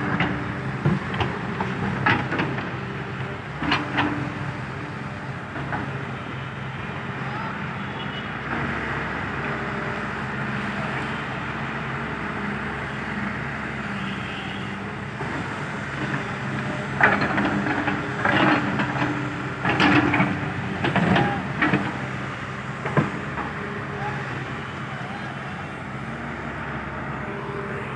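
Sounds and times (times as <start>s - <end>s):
diesel engine running: 0.0s - 7.2s, 14.8s - 27.9s.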